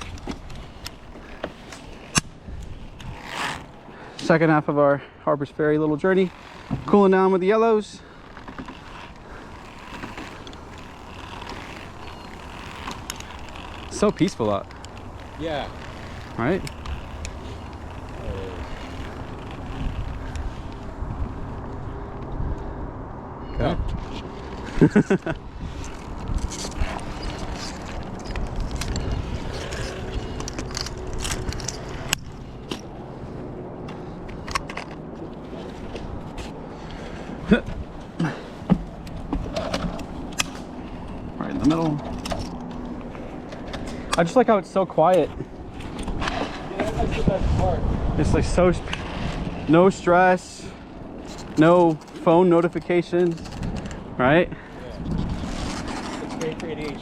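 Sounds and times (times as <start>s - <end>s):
clothing rustling against camera: 0.0s - 4.4s, 6.0s - 21.7s, 24.0s - 44.1s.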